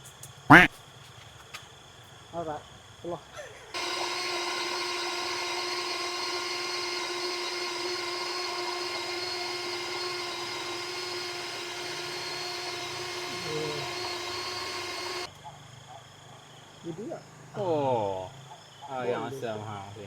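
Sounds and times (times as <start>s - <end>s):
small electric motor whining: 3.8s - 15.3s.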